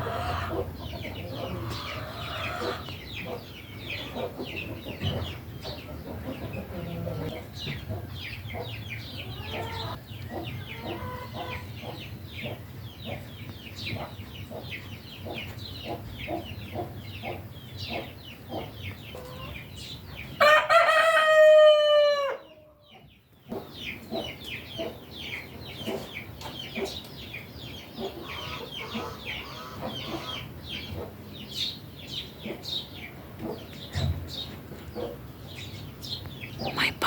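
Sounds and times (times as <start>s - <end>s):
small birds chirping: 0.0s - 20.4s, 22.4s - 37.0s
rooster crowing: 20.4s - 22.5s.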